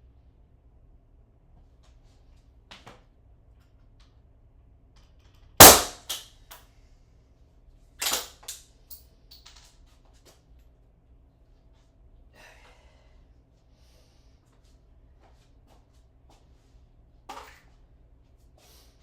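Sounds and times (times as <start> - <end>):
nail gun bang: 5.6 - 6.1.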